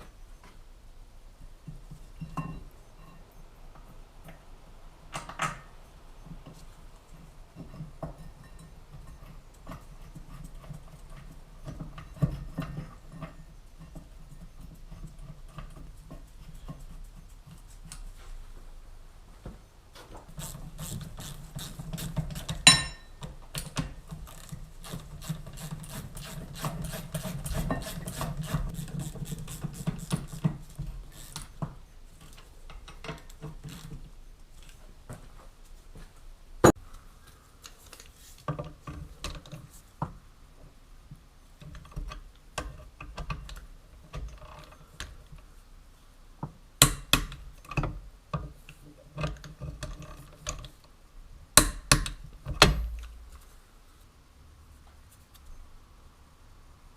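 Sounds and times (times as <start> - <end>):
metal tools knocking and clinking: 22.5 - 23.3.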